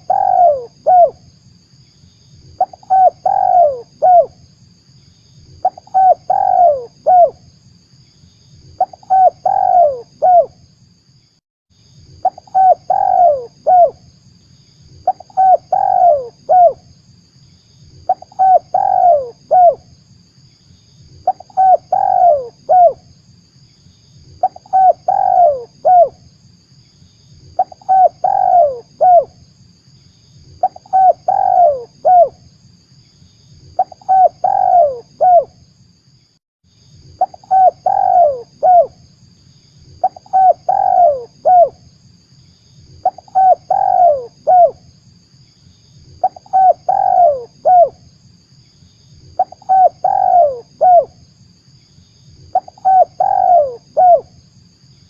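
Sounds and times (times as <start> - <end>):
dove cooing: 0.0 - 1.2, 2.6 - 4.4, 5.6 - 7.4, 8.8 - 10.6, 12.2 - 14.0, 15.0 - 16.8, 18.1 - 19.8, 21.2 - 23.0, 24.4 - 26.2, 27.6 - 29.3, 30.6 - 32.4, 33.8 - 35.5, 37.2 - 39.0, 40.0 - 41.8, 43.0 - 44.8, 46.2 - 48.0, 49.4 - 51.2, 52.5 - 54.3.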